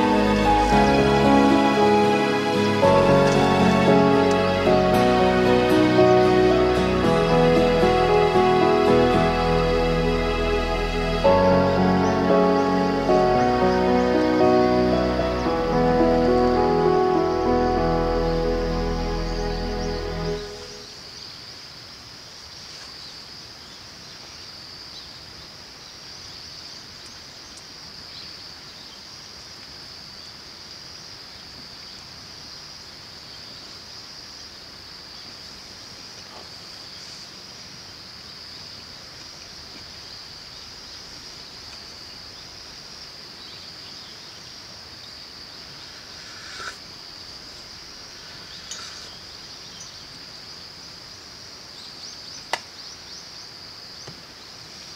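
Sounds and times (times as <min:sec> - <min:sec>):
river flowing: 0:00.0 - 0:22.2
high-pitched insect chorus: 0:00.0 - 0:54.9.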